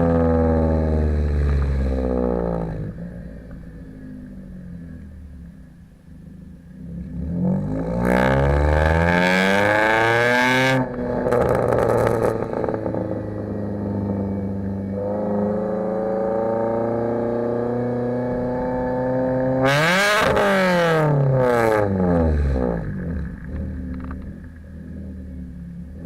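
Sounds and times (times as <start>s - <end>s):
car engine revving: 0.0s - 26.0s
exhaust crackles and pops: 1.2s - 2.8s, 10.8s - 13.5s, 22.8s - 25.0s.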